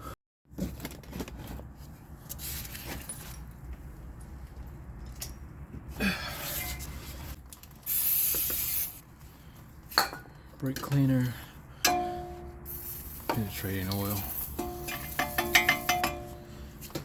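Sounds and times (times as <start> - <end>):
aerosol spray can hissing: 7.9 - 9.0.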